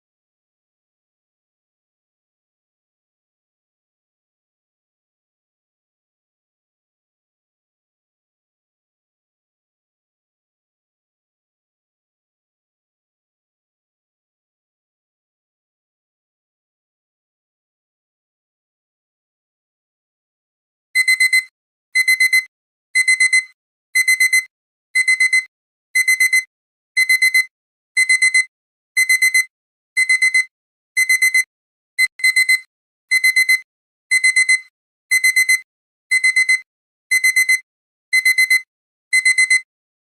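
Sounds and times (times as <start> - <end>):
timer alarm beeps: 21.0 - 39.7.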